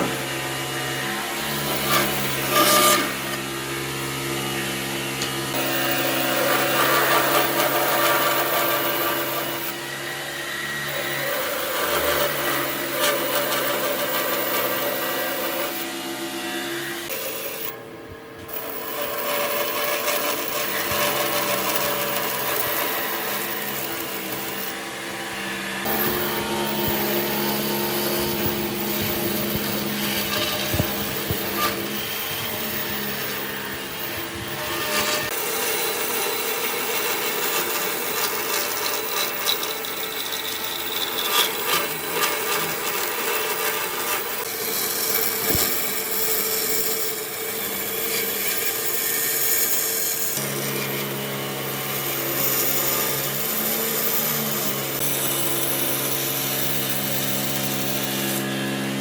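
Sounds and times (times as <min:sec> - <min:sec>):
power tool motor running: 0:00.0 - 0:59.0
tool rasping against wood: 0:05.2 - 0:15.9, 0:18.6 - 0:51.0.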